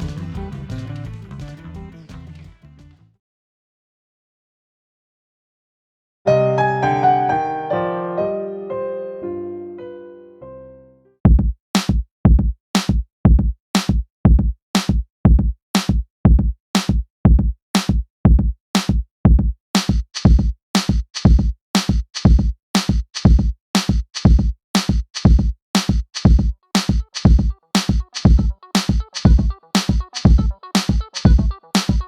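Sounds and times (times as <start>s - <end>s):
drum machine beat: 0.0s - 2.4s, 11.3s - 32.0s
electronic music: 0.0s - 2.9s, 26.2s - 32.0s.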